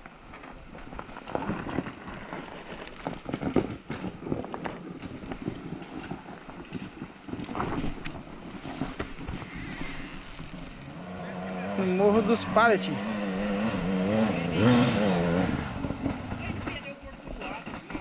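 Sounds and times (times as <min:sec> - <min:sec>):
wind noise on microphone: 0:00.0 - 0:11.0
motorcycle engine running: 0:09.0 - 0:18.0.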